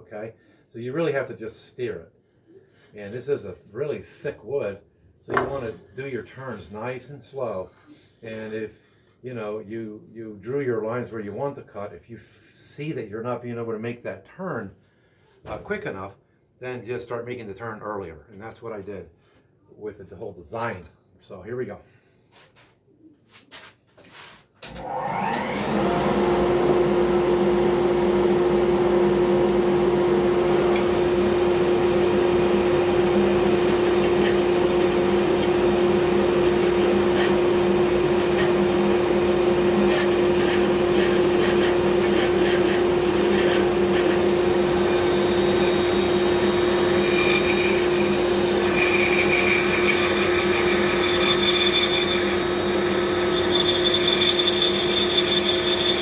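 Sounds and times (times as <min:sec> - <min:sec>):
bandsaw cutting wood: 0:25.1 - 0:56.0
high-pitched ringing tones: 0:30.3 - 0:30.8.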